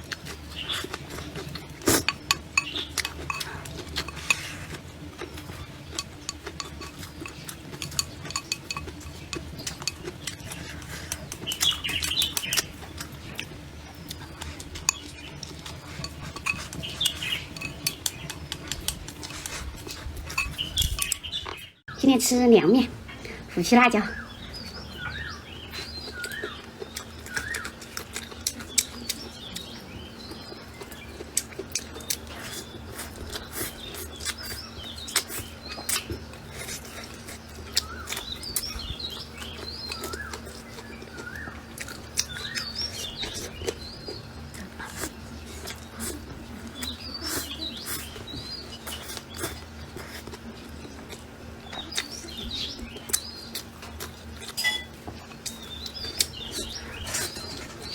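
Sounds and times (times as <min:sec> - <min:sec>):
small birds chirping: 0:00.1 - 0:57.9
chopsticks clicking on bowl: 0:05.9 - 0:10.5.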